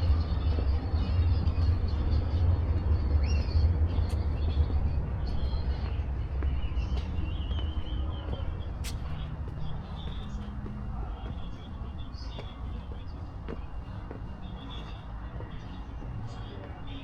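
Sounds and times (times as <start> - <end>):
steady low street rumble: 0.0 - 17.0.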